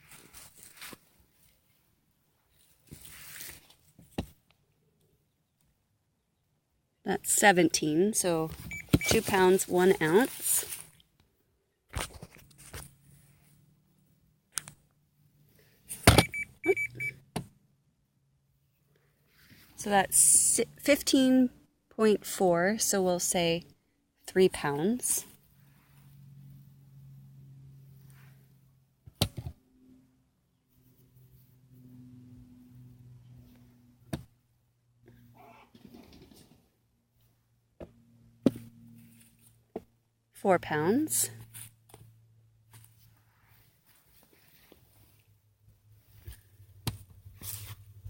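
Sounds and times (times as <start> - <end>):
low steady hum: 6.4 - 11.6
digital scale beeps: 8.7 - 9.2, 16.2 - 17.2.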